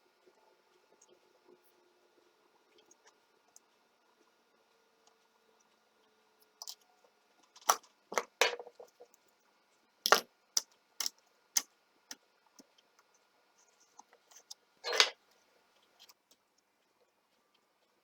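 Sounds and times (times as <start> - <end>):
small hard parts clicking: 10.1 - 11.7.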